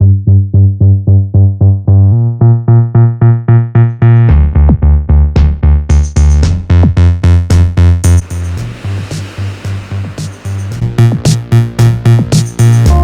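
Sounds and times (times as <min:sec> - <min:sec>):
electronic music with pulsing beat: 0:02.4 - 0:13.0.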